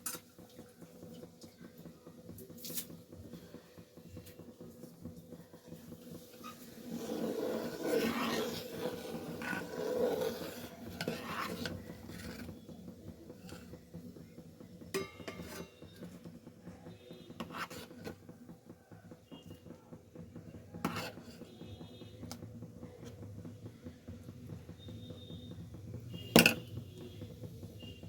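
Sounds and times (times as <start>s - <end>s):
metal utensils and pots clattering: 0.0s - 1.2s, 14.8s - 16.3s, 26.3s - 26.7s.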